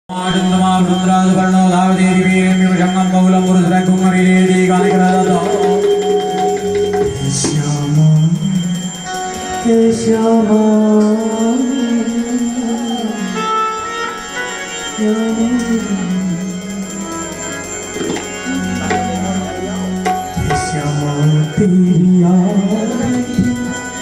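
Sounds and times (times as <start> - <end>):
instrumental accompaniment: 0.1 - 24.0
person singing sliding notes: 17.9 - 24.0.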